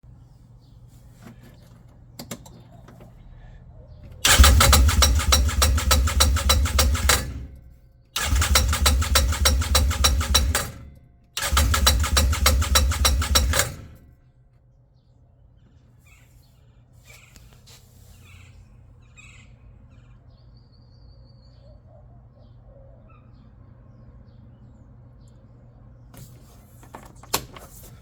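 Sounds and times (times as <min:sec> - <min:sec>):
bird chirps: 0:15.0 - 0:26.1.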